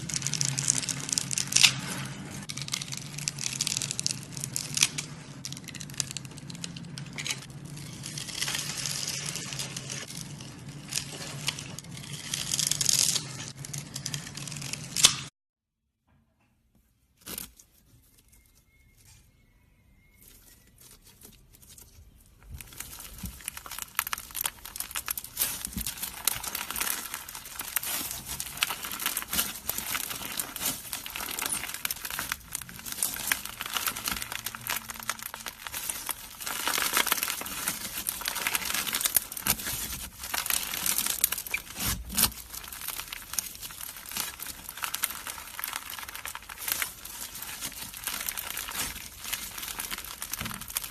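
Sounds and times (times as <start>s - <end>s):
slime squeezed by hand crackling: 20.1s - 50.9s.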